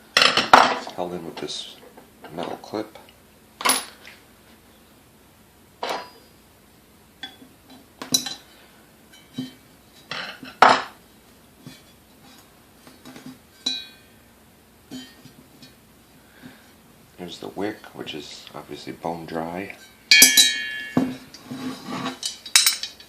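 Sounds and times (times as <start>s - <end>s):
tool clinking on metal housing: 20.1s - 21.2s, 22.2s - 23.0s.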